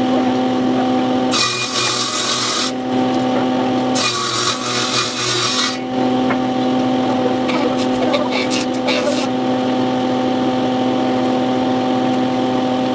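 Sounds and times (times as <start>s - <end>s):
power tool motor humming: 1.1s - 10.0s
saw cutting into wood: 1.3s - 2.9s, 3.8s - 5.9s, 7.5s - 9.4s.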